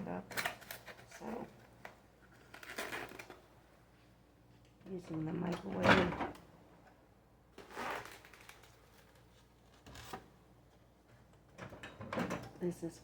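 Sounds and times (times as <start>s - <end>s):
rustling handling sounds: 7.5s - 11.3s.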